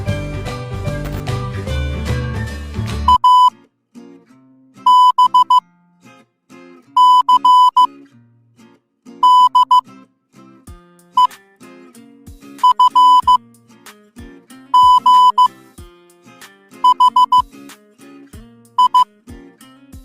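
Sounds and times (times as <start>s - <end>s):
morse code beeps: 3.1s - 3.5s, 4.9s - 5.6s, 7.0s - 7.9s, 9.2s - 9.8s, 12.6s - 13.4s, 14.8s - 15.5s, 16.8s - 17.5s, 18.8s - 19.0s
background music with drum beat: 10.7s - 11.4s, 12.3s - 17.8s, 18.4s - 20.0s.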